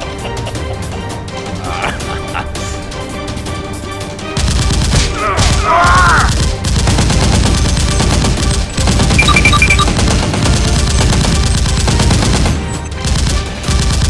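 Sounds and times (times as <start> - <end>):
background music: 0.0 - 14.0
rapid automatic gunfire: 4.4 - 5.1, 6.3 - 14.0
quick beeps: 9.2 - 9.9.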